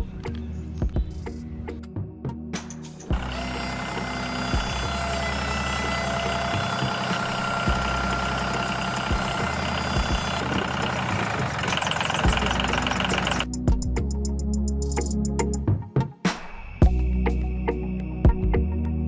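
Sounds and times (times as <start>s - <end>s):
small tractor engine running: 3.1s - 13.6s.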